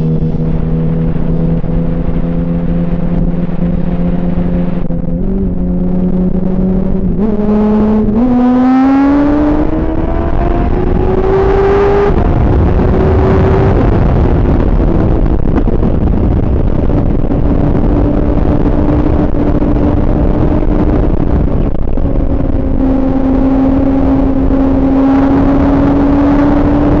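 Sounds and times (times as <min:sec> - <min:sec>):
motorcycle engine revving: 0:00.0 - 0:27.0
wind rushing: 0:00.0 - 0:27.0.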